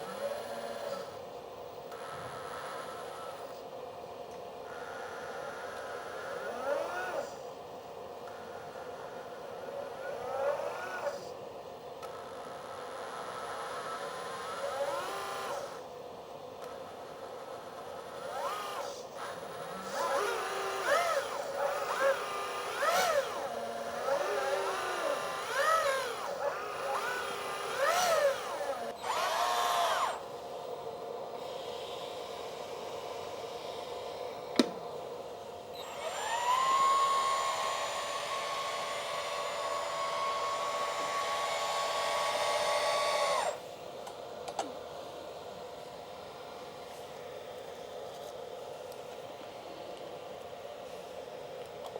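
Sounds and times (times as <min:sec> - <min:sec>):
hydraulic pumps whining: 0:04.7 - 0:07.4, 0:09.8 - 0:11.3, 0:13.0 - 0:15.8, 0:16.6 - 0:30.6, 0:31.3 - 0:44.8.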